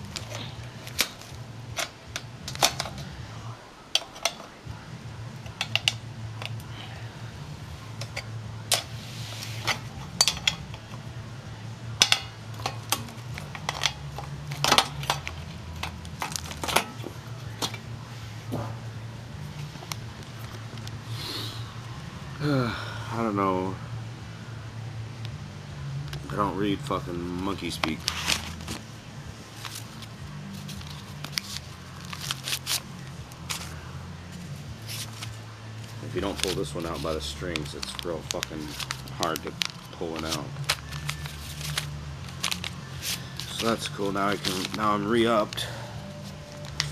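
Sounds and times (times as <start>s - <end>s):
steady low hum: 0.0s - 46.9s
clicks of cartridges handled: 0.1s - 3.1s, 4.0s - 4.5s, 5.4s - 6.6s
paper crackle: 27.9s - 28.8s, 29.5s - 33.8s, 34.4s - 46.9s.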